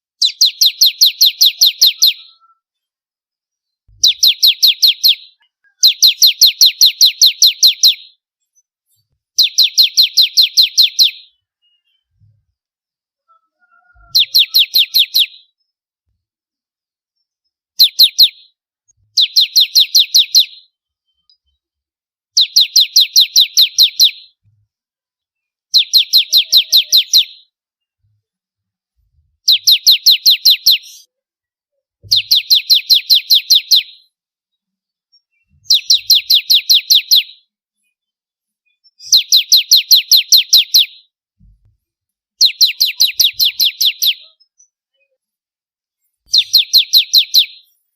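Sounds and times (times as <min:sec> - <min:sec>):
bird singing rapid trills: 0:00.2 - 0:02.7, 0:04.0 - 0:08.2, 0:09.4 - 0:12.2, 0:13.2 - 0:15.8, 0:19.2 - 0:21.5, 0:22.4 - 0:24.4, 0:25.7 - 0:27.5, 0:29.5 - 0:31.1, 0:32.1 - 0:34.0, 0:35.2 - 0:37.4, 0:38.8 - 0:41.1, 0:42.4 - 0:45.2, 0:46.3 - 0:47.7.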